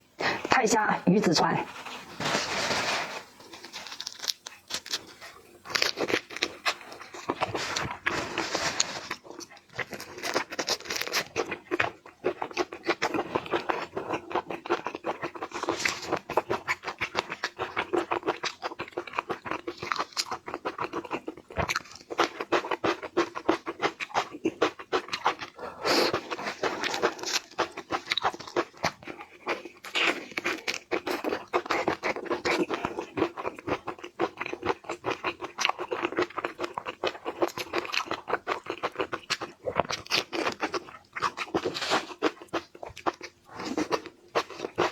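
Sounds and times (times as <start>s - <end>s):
crunching and chewing: 1.7s - 44.9s.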